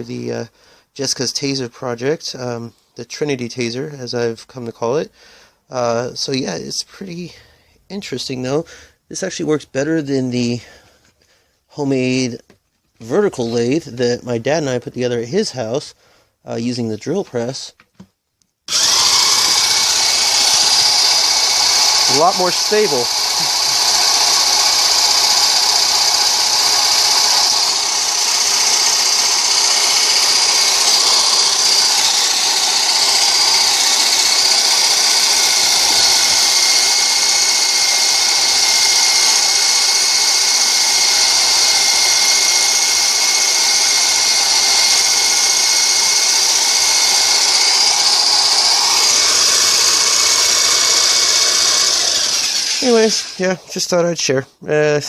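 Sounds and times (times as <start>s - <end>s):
electric drill high whine: 18.7s - 53.6s.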